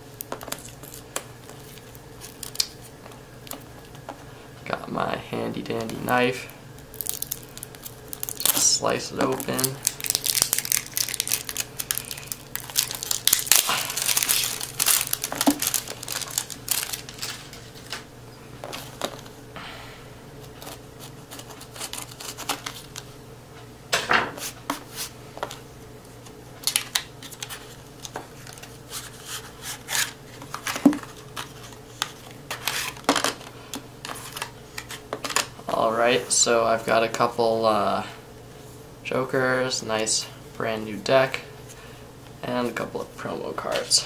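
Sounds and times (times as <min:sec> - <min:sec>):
cellophane crinkling and tearing: 0:00.1 - 0:03.7, 0:06.8 - 0:18.0, 0:20.4 - 0:23.0, 0:26.6 - 0:35.5.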